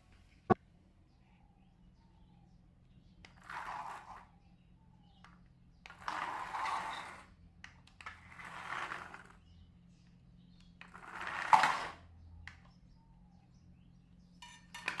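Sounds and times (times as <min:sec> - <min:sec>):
plastic toy truck rolling: 0:03.2 - 0:04.4, 0:05.2 - 0:09.6, 0:10.6 - 0:12.7, 0:14.5 - 0:15.0.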